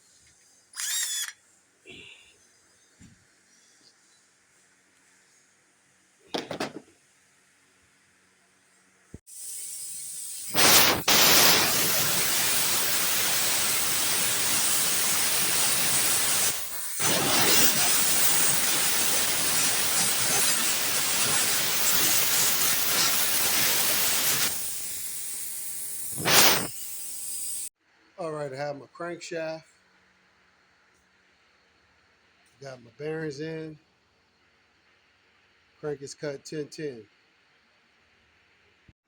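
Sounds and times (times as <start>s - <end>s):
pressurised jet hissing: 9.3s - 27.7s.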